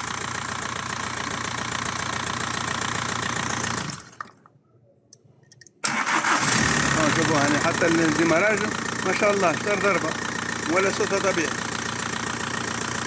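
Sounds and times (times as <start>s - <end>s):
diesel engine idling: 0.0s - 4.2s, 5.9s - 13.0s.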